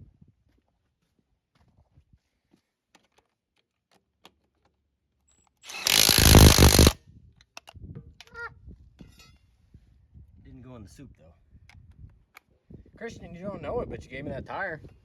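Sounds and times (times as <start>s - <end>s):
impact wrench burst: 5.7s - 7.0s.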